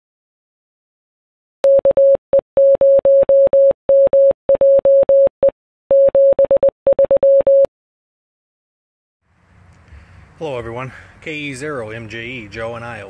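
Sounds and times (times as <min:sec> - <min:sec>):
morse code beeps: 0:01.6 - 0:07.7.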